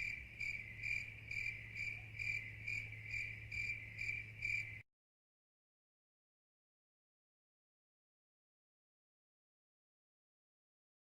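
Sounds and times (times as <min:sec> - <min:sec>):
cricket chirping: 0:00.0 - 0:04.8
faint low hum: 0:00.0 - 0:04.8.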